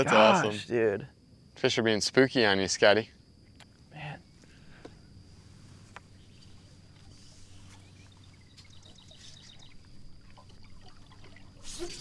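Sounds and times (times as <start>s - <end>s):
water lapping against boat hull: 6.4s - 12.0s.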